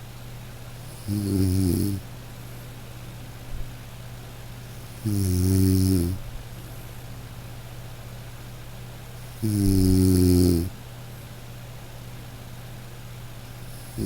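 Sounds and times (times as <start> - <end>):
steady low hum: 0.0 - 14.0
person snoring: 0.9 - 2.0, 5.0 - 6.2, 9.4 - 10.7, 13.8 - 14.0.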